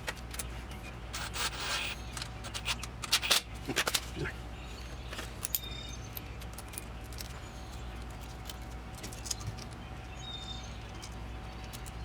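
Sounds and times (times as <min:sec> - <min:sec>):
steady low hum: 0:00.0 - 0:04.9
metal parts and tools clinking: 0:01.1 - 0:04.1.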